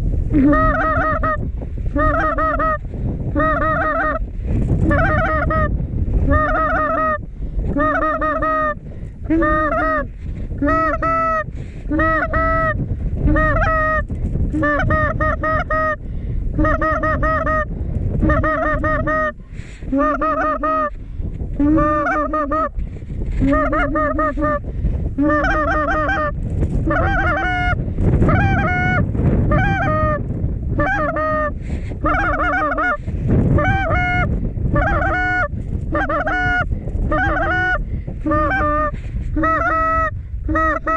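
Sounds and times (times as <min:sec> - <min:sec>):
wind rumble on microphone: 0:00.0 - 0:40.9
goose honking: 0:00.4 - 0:01.4, 0:02.0 - 0:02.8, 0:03.4 - 0:04.2, 0:04.8 - 0:05.7, 0:06.3 - 0:07.2, 0:07.8 - 0:14.0, 0:16.6 - 0:21.0, 0:21.6 - 0:22.7, 0:23.4 - 0:24.6, 0:25.2 - 0:30.2, 0:30.8 - 0:40.9.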